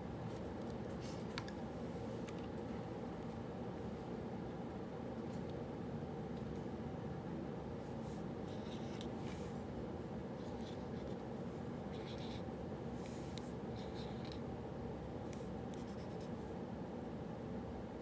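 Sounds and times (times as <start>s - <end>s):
low room hum: 0.0s - 18.0s
pen scratching on paper: 11.9s - 12.4s, 15.8s - 16.3s.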